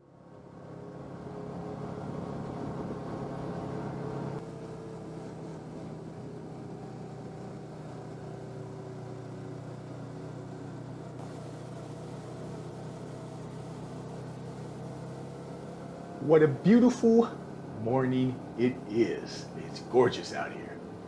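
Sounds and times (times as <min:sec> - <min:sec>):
low engine hum: 0:11.0 - 0:21.0.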